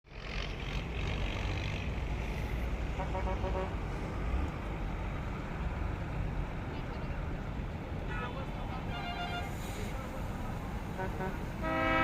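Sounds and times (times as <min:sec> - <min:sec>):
bus diesel engine rumbling: 0:00.1 - 0:12.0
pulsing horn tone: 0:11.0 - 0:12.0.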